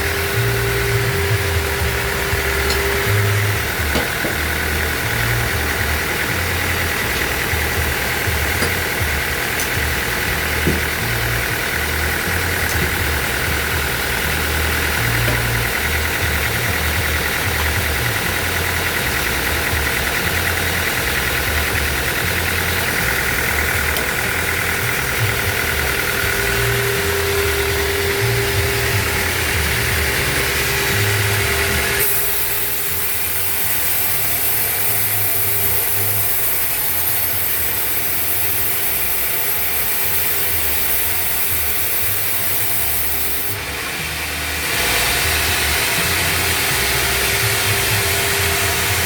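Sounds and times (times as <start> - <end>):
band sawmill droning: 0.0 - 49.0
high whine: 0.0 - 49.0
lower tone: 22.5 - 32.0.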